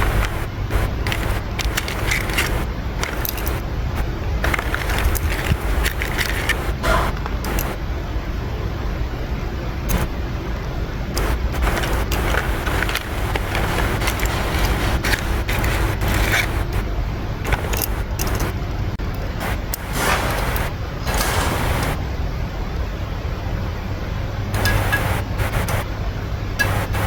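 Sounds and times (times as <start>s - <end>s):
metal tools clinking and scraping: 0.0s - 3.8s, 4.4s - 7.8s, 11.2s - 16.8s, 17.4s - 18.6s, 19.7s - 22.0s, 24.6s - 25.8s.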